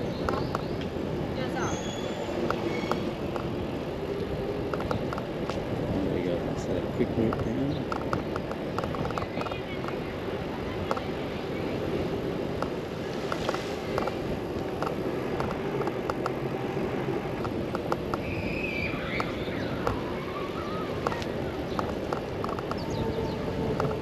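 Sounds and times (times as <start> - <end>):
bicycle road noise: 0.0 - 24.0
wind rushing over microphone: 0.0 - 24.0
bike clicks and rattles: 4.7 - 5.8, 7.2 - 10.0, 12.5 - 16.4, 17.4 - 18.3, 21.0 - 24.0.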